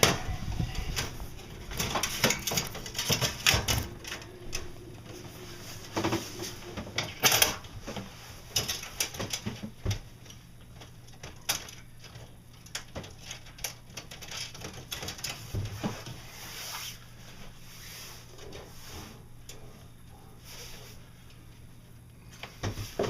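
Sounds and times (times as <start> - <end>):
hand tools clicking and knocking: 0.0 - 10.0
faint low hum: 0.0 - 23.0.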